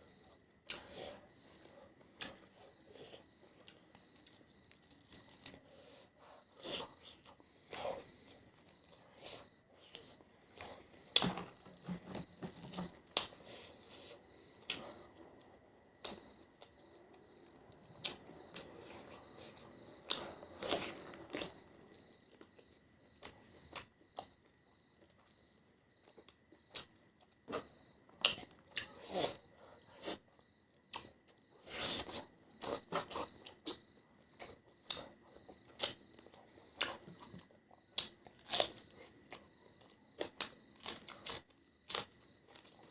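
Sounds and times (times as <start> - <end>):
person chewing and biting: 40.2 - 42.8.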